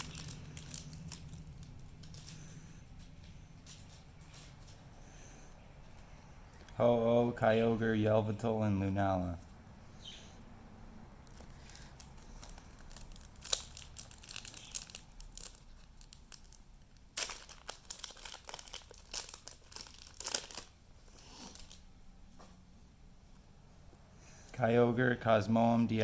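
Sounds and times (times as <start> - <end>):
foil wrapper crinkling and tearing: 0.0 - 4.7, 11.2 - 20.8, 21.4 - 21.8.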